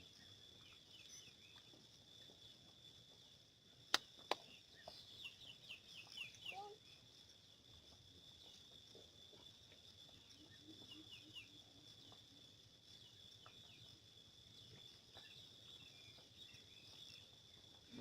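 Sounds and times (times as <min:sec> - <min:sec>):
high insect drone: 0:00.0 - 0:18.0.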